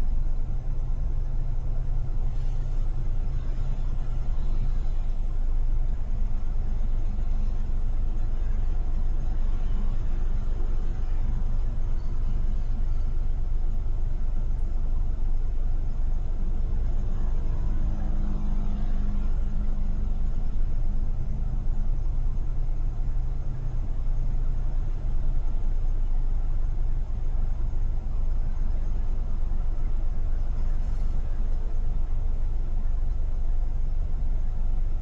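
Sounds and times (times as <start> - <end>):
engine hum: 0.0 - 35.0
road and traffic rumble: 0.0 - 35.0.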